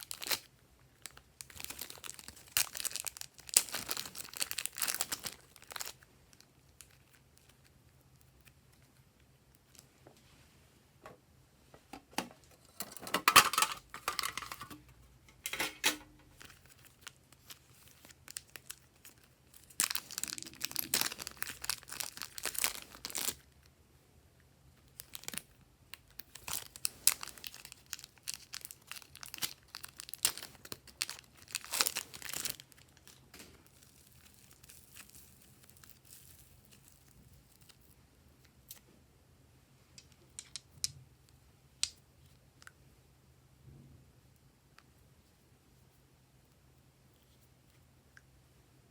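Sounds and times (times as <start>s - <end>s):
slime crackling and tearing: 0.0s - 8.9s, 16.3s - 23.4s, 24.9s - 37.9s.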